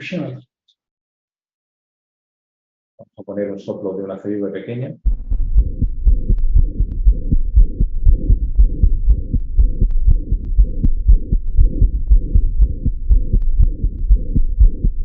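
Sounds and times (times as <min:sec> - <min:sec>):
high-pitched heart murmur: 0:05.0 - 0:15.0
child's heartbeat: 0:05.1 - 0:15.0.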